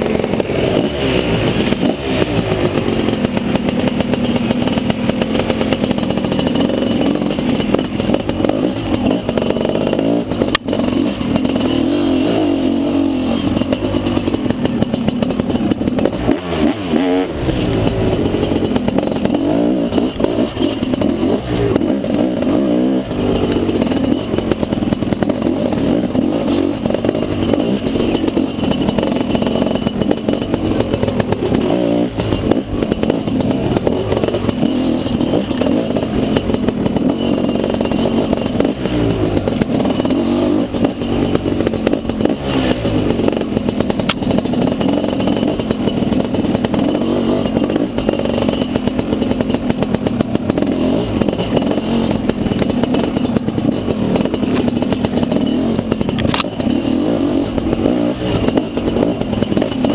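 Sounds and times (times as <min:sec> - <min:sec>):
dirt bike engine revving: 0:00.0 - 0:59.9.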